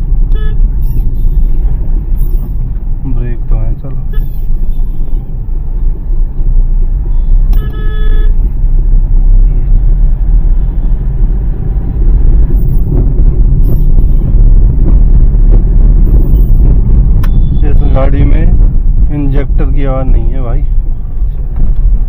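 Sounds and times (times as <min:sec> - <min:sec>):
engine and road noise rumble: 0:00.0 - 0:22.0
car horn toot: 0:00.3 - 0:02.6, 0:04.0 - 0:05.4, 0:07.1 - 0:08.5, 0:16.2 - 0:18.0.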